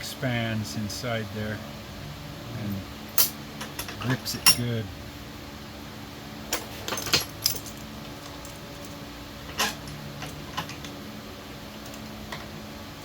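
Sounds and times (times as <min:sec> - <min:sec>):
steady low hum: 0:00.0 - 0:13.0
metal tools clinking: 0:03.2 - 0:04.7, 0:06.6 - 0:08.9.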